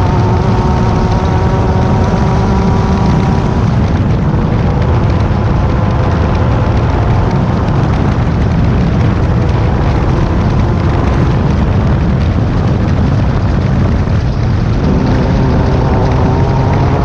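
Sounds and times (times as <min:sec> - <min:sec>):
race car engine drone: 0:00.0 - 0:17.0
rumble of wind and terrain: 0:00.0 - 0:17.0.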